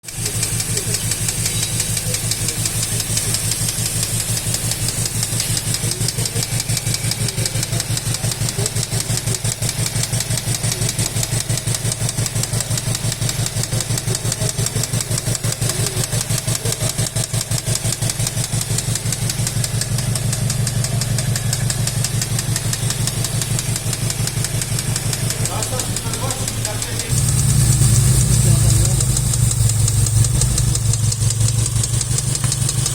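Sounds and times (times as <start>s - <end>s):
car engine running with knocking: 0.0s - 32.9s.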